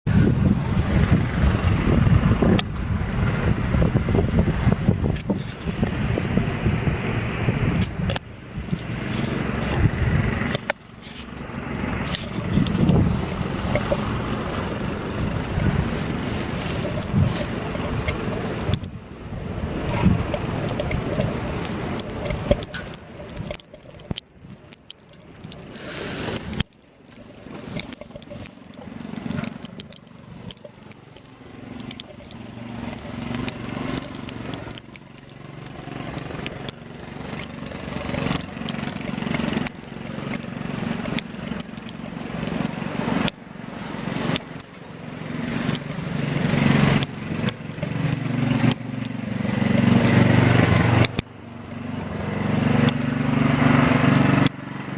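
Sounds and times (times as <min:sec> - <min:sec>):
wind buffeting microphone: 0:00.1 - 0:24.7
street traffic rumble: 0:00.1 - 0:54.9
small clicks: 0:07.7 - 0:13.0, 0:16.5 - 0:18.9, 0:19.8 - 0:43.4, 0:44.2 - 0:54.9.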